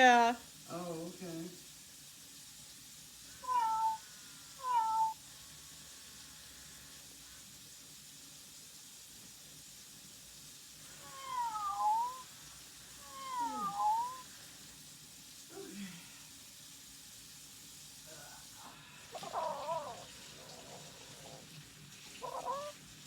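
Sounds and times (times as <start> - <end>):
robot toy cat meowing: 3.4 - 5.2, 11.0 - 12.2, 13.0 - 14.2, 19.2 - 20.1, 22.2 - 22.8.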